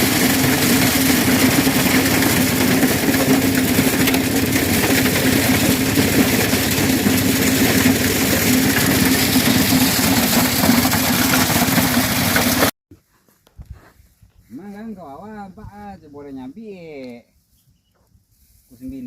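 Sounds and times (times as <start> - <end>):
corn sheller mechanical din: 0.0 - 12.7.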